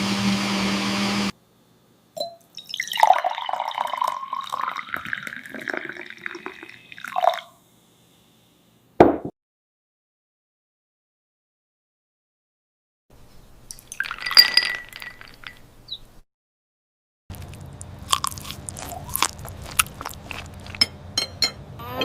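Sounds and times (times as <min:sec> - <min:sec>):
motor hum: 0:17.3 - 0:22.0.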